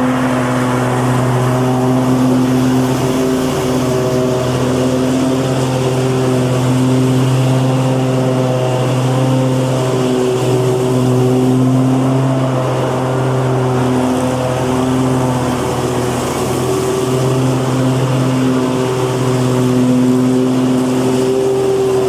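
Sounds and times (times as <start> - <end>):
lawn mower engine running: 0.0 - 22.0.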